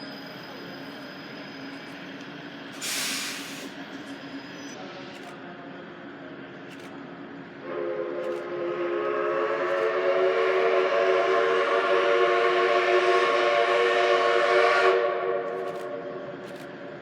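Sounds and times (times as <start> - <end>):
train running noise: 0.0 - 17.0
train horn blast: 7.6 - 16.3.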